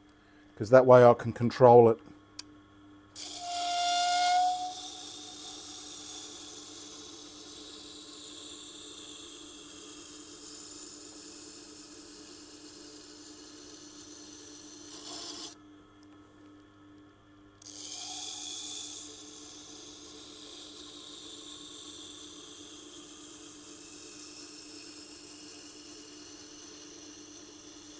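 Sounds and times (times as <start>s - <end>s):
high squeal: 3.2s - 6.5s
blade grinding on wheel: 3.2s - 15.6s, 17.6s - 23.1s.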